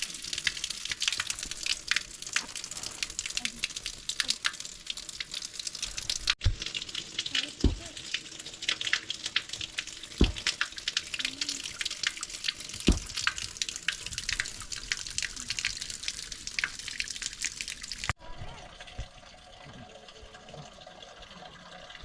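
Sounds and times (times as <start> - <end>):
water splashing and dripping: 0.0 - 22.0
dull thumps: 7.6 - 8.0, 10.2 - 10.6, 12.8 - 13.6.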